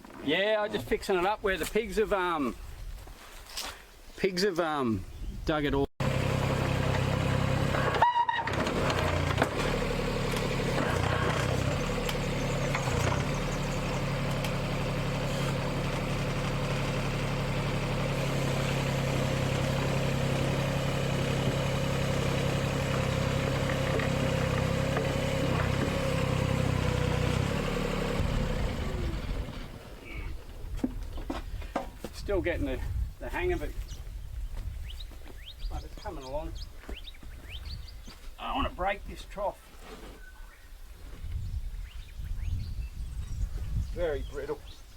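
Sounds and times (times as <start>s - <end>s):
mini excavator engine running: 6.0s - 30.5s.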